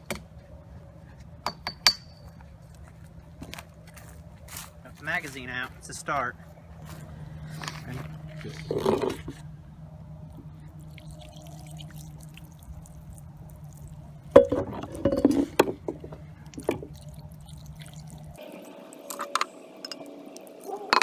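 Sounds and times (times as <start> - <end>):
steady low hum: 0.0 - 21.0
water dripping and trickling: 10.3 - 21.0.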